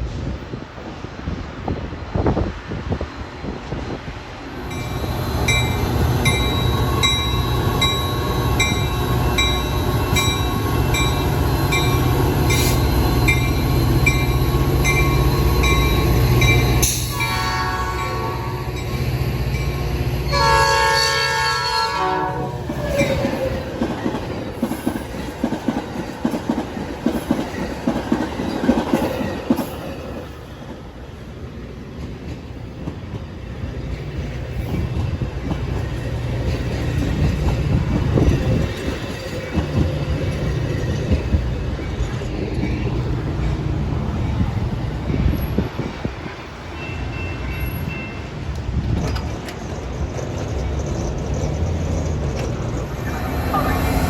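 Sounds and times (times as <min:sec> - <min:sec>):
diesel locomotive engine: 0:00.0 - 0:54.0
crossing bell dinging: 0:04.6 - 0:21.9, 0:46.4 - 0:48.5, 0:53.0 - 0:54.0
train horn blasts: 0:17.1 - 0:18.8, 0:20.3 - 0:22.6
train cars clattering over rails: 0:22.4 - 0:30.9, 0:31.9 - 0:54.0.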